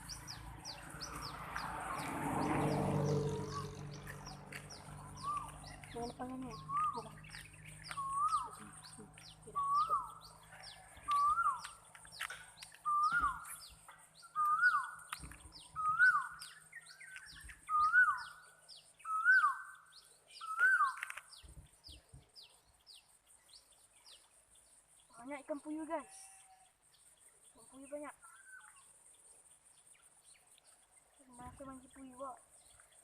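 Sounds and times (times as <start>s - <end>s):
bird whistled call: 6.6s - 7.2s, 7.9s - 8.6s, 9.5s - 10.2s, 11.1s - 11.8s, 12.8s - 21.2s.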